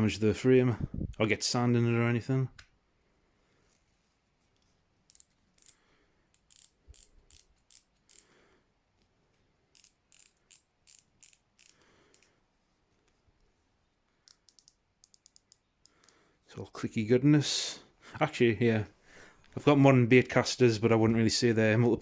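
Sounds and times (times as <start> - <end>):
fishing reel ratchet clicks: 5.1 - 8.2, 9.7 - 12.3, 14.2 - 16.0.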